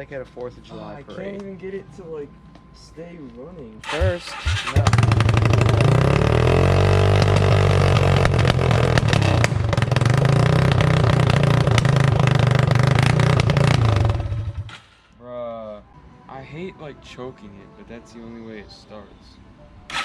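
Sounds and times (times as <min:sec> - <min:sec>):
motorcycle engine with crackling pops: 0:04.6 - 0:15.0.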